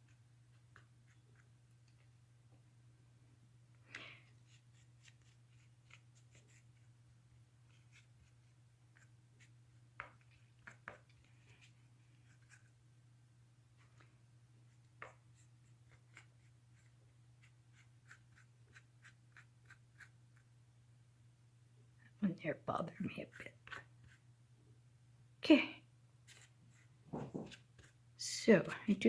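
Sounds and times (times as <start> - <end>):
paintbrush scratching on canvas: 7.7 - 12.8, 14.7 - 20.5, 22.8 - 24.3, 26.2 - 29.0.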